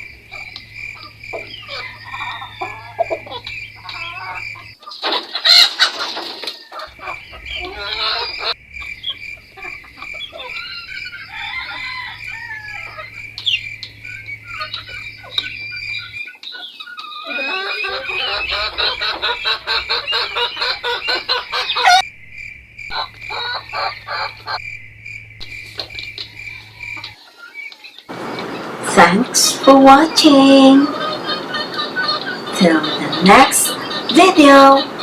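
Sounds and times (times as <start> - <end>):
crickets trilling: 0.0 - 4.8, 6.9 - 16.2, 17.9 - 27.2, 28.1 - 35.0
chicks clucking and peeping: 30.9 - 35.0.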